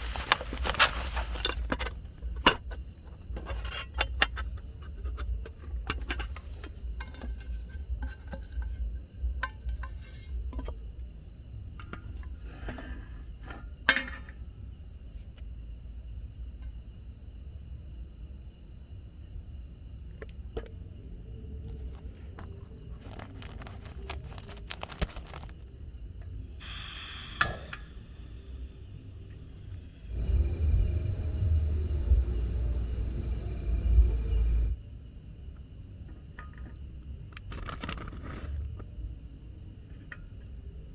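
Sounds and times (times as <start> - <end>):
insects chirping: 0.0 - 40.9
low background rumble: 25.5 - 40.9.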